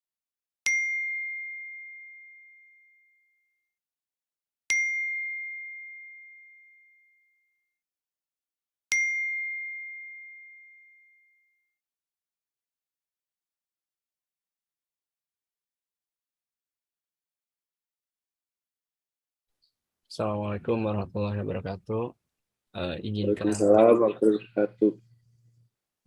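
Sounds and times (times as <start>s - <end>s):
bell-like ding: 0.7s - 3.4s, 4.7s - 7.3s, 8.9s - 11.6s.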